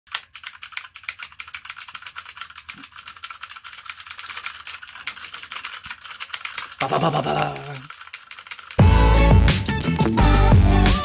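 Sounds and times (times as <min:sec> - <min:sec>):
mechanical keyboard typing: 0:00.1 - 0:08.8.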